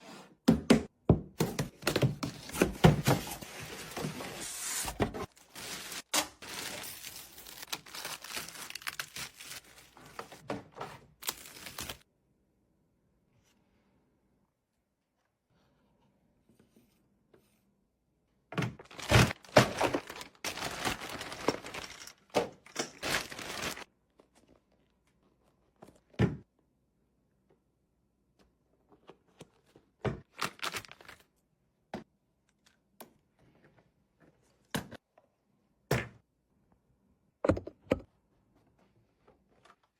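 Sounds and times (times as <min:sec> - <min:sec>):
packaging rustling: 0:02.3 - 0:10.4, 0:11.2 - 0:12.0, 0:18.8 - 0:23.9.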